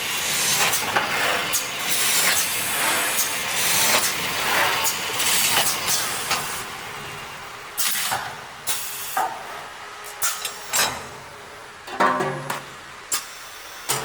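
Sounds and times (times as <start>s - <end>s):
machine hiss: 7.8s - 9.4s.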